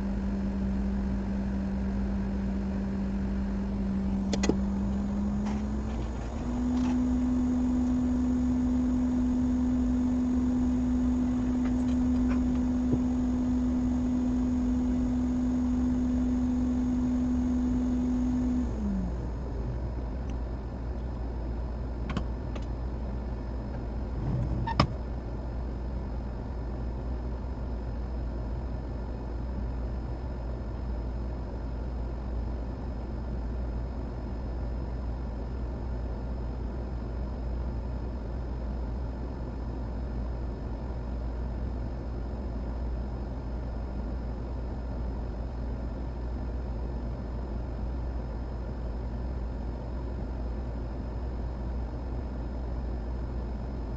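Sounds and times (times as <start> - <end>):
bench equipment humming: 0.0 - 26.2.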